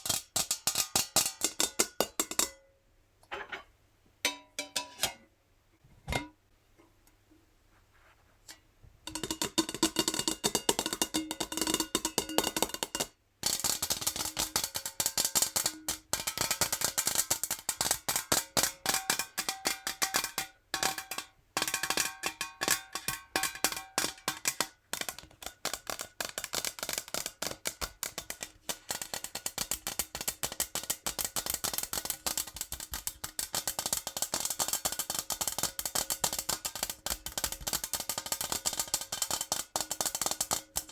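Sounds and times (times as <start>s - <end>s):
fingernails tapping on metal jar: 9.1s - 40.9s.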